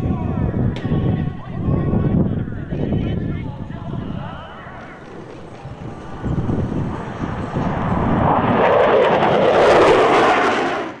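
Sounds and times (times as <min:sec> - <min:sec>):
aircraft engine flying past: 0:03.6 - 0:11.0.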